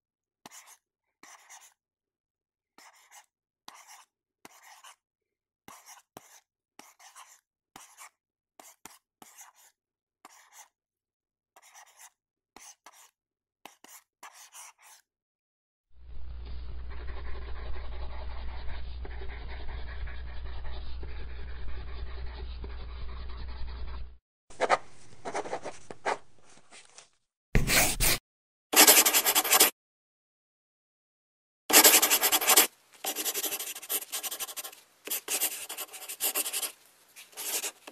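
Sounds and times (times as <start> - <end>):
pen scratching on paper: 0.5 - 1.8, 2.8 - 5.0, 5.7 - 10.7, 11.6 - 15.0, 16.4 - 26.3, 27.6 - 28.2, 28.8 - 29.7, 31.7 - 37.9
low hum: 16.0 - 21.8.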